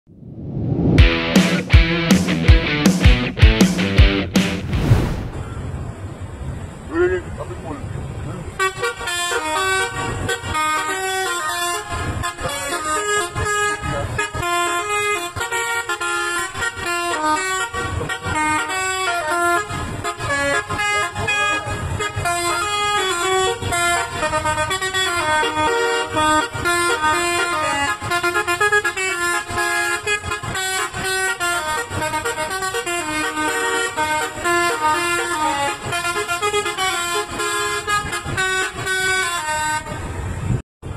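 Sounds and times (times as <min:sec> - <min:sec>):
bus air horns playing melody: 0:08.6 - 0:40.5.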